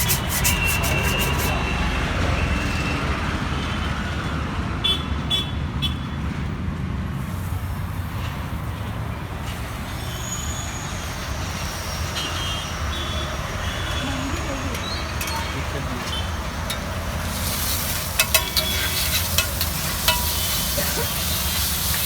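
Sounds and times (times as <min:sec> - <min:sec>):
roadside traffic rumble: 0:00.0 - 0:22.0
short sharp clinks: 0:14.7 - 0:17.0.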